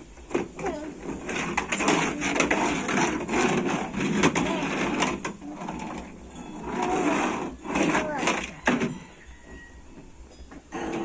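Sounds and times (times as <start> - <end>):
plastic parts knocking and scraping: 0.2 - 8.9
toy excavator rattling and clicking: 0.3 - 8.9.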